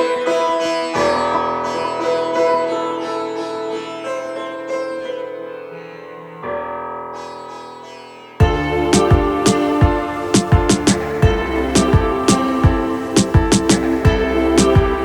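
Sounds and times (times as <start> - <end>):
sitar-like plucked strings: 0.0 - 15.0
sustained drone: 8.4 - 15.0.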